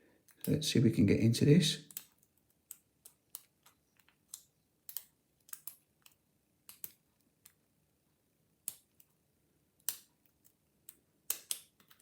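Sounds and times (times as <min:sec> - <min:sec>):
lock pick clicking in padlock: 0:11.3 - 0:12.0.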